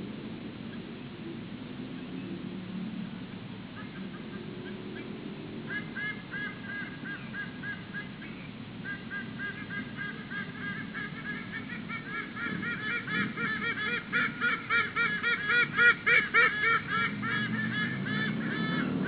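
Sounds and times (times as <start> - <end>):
eagles honking: 5.7 - 19.0.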